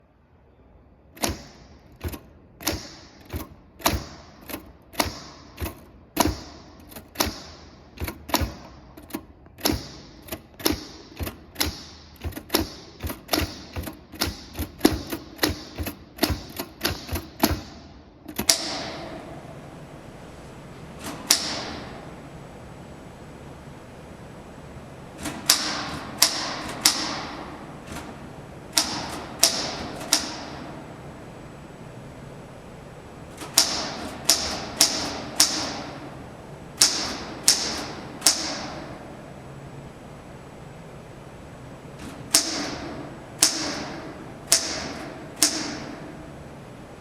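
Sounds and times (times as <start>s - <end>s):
typewriter keystrokes: 1.2s - 19.1s, 21.0s - 21.9s, 25.2s - 30.7s, 33.3s - 36.2s, 36.8s - 38.9s, 42.0s - 46.1s.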